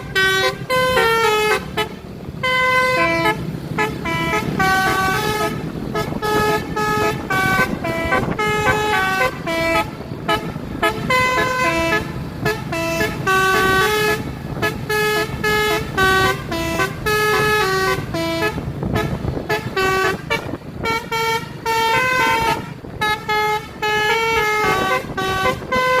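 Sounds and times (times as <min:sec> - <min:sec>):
musical air horn melody: 0:00.0 - 0:26.0.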